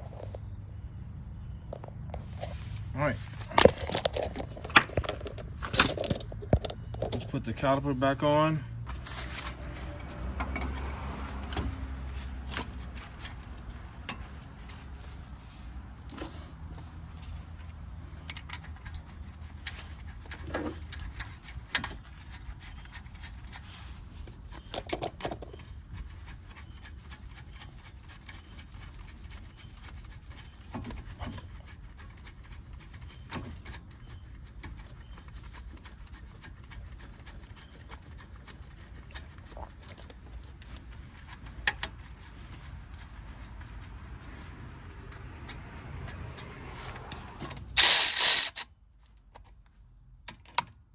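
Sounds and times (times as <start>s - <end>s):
metal clinks of tools: 47.8s - 48.6s.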